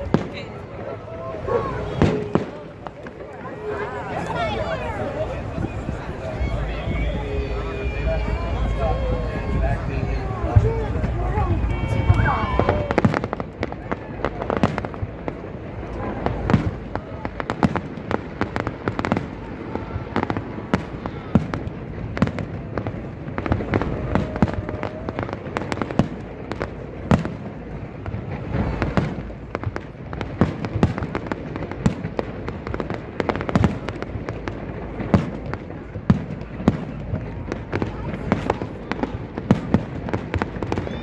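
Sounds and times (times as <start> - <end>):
fireworks bangs and crackles: 0.0 - 41.0
steady rumble: 3.9 - 12.6.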